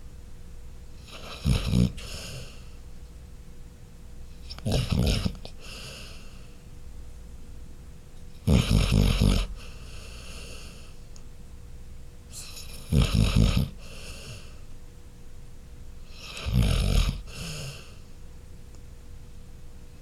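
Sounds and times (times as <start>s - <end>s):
dog snoring: 1.0s - 2.7s, 4.4s - 6.5s, 8.4s - 11.0s, 12.3s - 14.6s, 16.1s - 18.0s
soft dog breathing: 9.4s - 11.1s.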